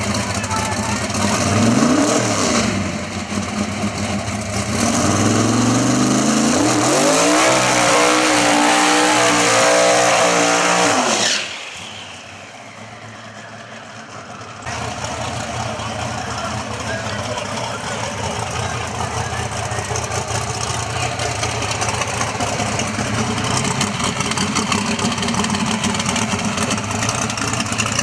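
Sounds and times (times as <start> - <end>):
racing car engines at full throttle: 0.0 - 28.0
low engine rumble: 11.6 - 28.0.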